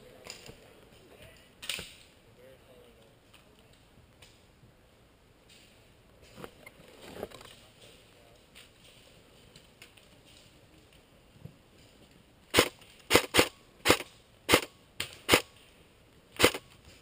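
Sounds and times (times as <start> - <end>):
airsoft gun shots: 12.5 - 15.5, 16.4 - 16.6.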